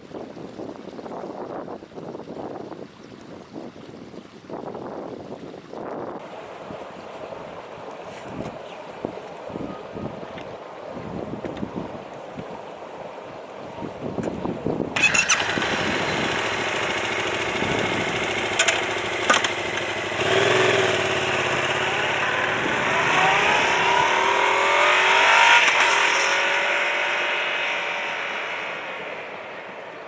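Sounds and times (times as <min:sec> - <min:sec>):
motorcycle engine revving: 0:14.9 - 0:30.0.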